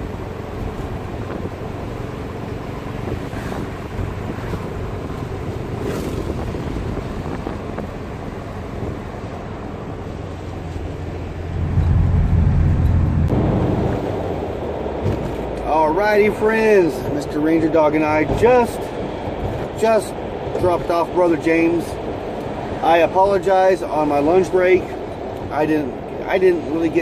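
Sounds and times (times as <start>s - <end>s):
bus engine drone: 0.0s - 27.0s
road and wind noise: 0.0s - 27.0s.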